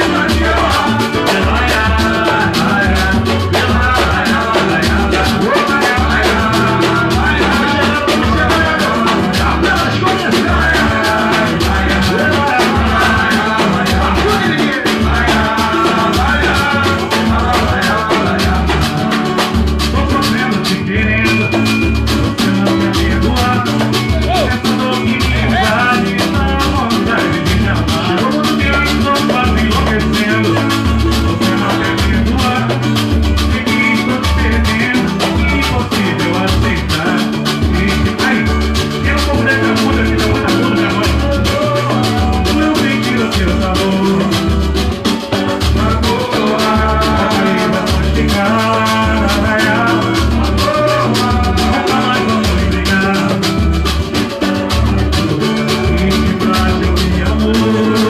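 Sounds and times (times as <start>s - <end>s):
band music: 0.0s - 58.0s
drums and percussion beat: 0.0s - 58.0s.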